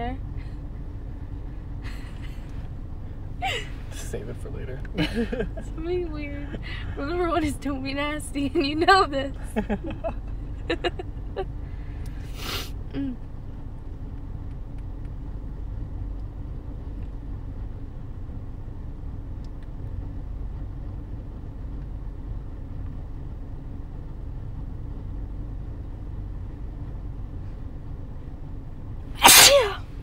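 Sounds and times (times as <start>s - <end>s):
low background rumble: 0.0s - 30.0s
woman sneezing: 29.2s - 30.0s.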